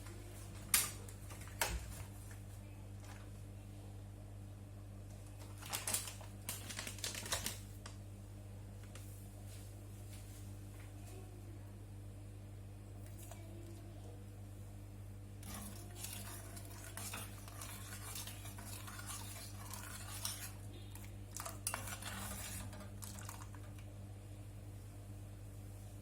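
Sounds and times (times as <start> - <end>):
low steady hum: 0.0 - 26.0
utensil scraping in cooking pot: 15.4 - 23.7.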